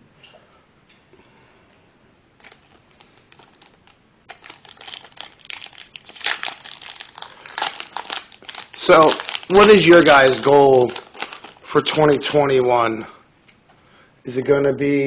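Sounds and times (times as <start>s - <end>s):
foil wrapper crinkling and tearing: 2.4s - 12.4s.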